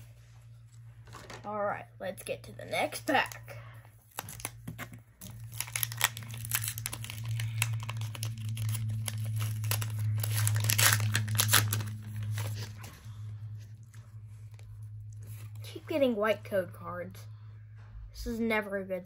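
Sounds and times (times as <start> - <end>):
steady low hum: 0.0 - 19.0
foil wrapper crinkling: 4.1 - 12.8.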